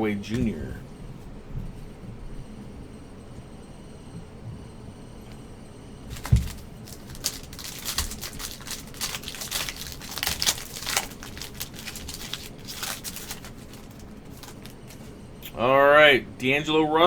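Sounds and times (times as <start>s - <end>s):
plastic packaging crinkling: 6.1s - 15.3s.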